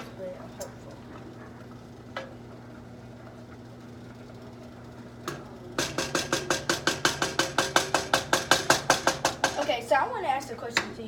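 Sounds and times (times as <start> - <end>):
steady low hum: 0.0 - 11.0
metal utensil beating metal pot: 5.3 - 9.7.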